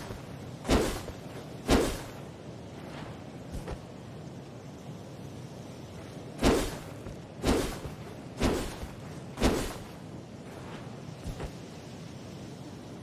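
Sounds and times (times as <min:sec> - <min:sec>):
sword swishes: 0:00.7 - 0:02.2, 0:06.4 - 0:09.9.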